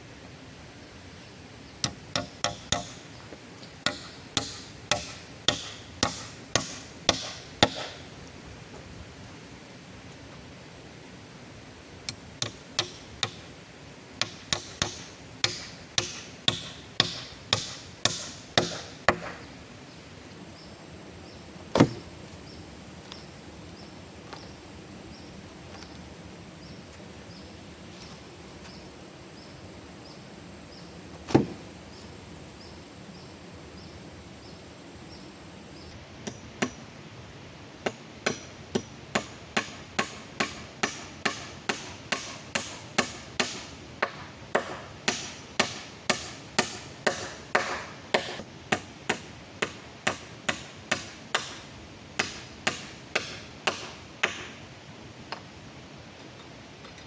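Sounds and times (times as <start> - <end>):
steady background hiss: 0.0 - 57.0
wood chopping strikes: 1.8 - 3.1, 3.8 - 8.1, 12.4 - 13.4, 14.2 - 19.5, 21.7 - 22.2, 31.2 - 31.6, 37.9 - 51.6, 52.2 - 54.5.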